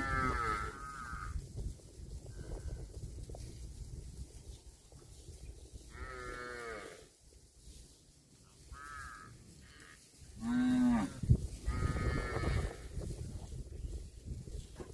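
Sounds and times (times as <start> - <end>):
cattle mooing: 8.8 - 12.8.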